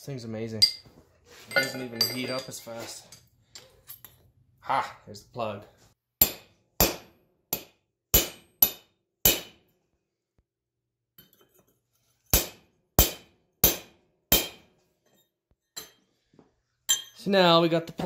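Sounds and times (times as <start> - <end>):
hammer clanging on steel: 1.5 - 3.7, 12.3 - 14.7.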